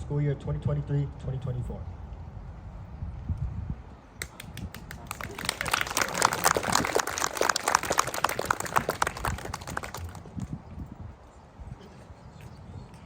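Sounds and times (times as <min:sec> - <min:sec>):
audience clapping: 0:04.2 - 0:10.5.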